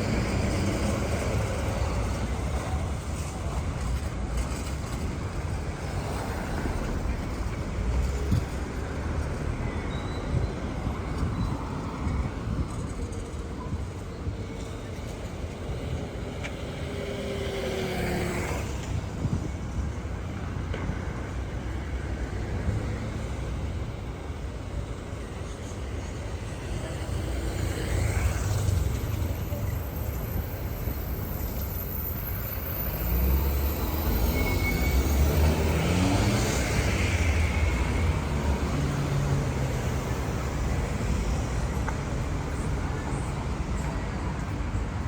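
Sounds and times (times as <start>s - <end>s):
passing cars and tyre noise: 0.0s - 45.0s
vehicle engine pulling past: 32.7s - 40.6s.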